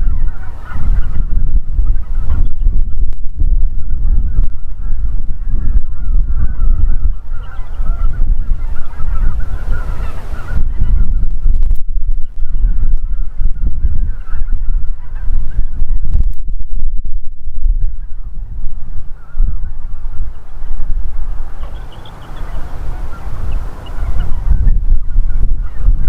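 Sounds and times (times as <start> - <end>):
geese honking: 0.0 - 2.9, 3.6 - 16.1, 17.7 - 26.0
loud steady low rumble: 0.8 - 7.3.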